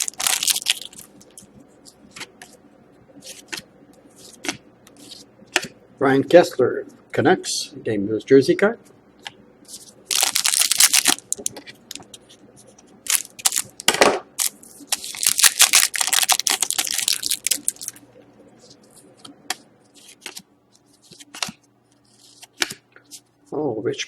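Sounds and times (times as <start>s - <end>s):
foil wrapper crinkling and tearing: 0.0s - 1.5s, 9.7s - 12.0s, 13.0s - 18.0s
cards clicking and tapping: 22.3s - 22.8s.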